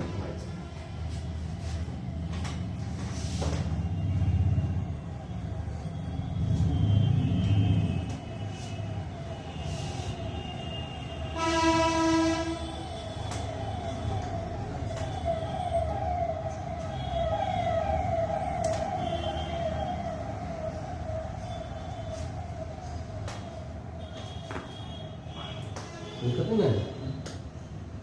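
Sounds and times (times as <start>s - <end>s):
traffic rumble: 0.0s - 28.0s
siren wailing: 0.3s - 27.2s
vehicle horn: 9.6s - 12.9s, 24.1s - 27.0s.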